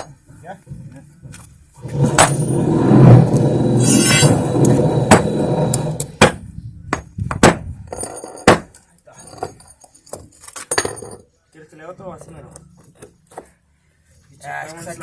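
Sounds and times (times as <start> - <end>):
hard tools knocking concrete: 1.8 - 11.2.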